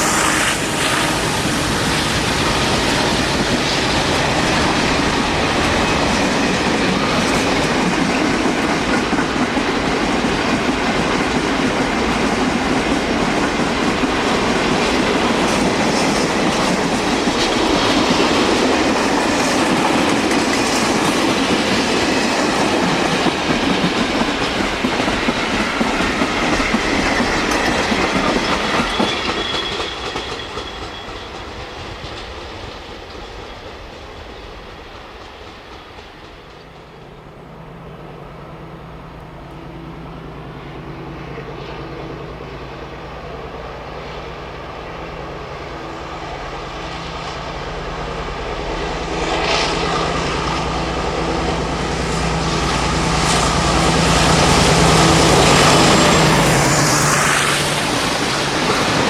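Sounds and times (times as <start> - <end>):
wheel clickety-clack over rail joints: 0.0 - 36.9
freight train rumbling past: 0.0 - 59.0.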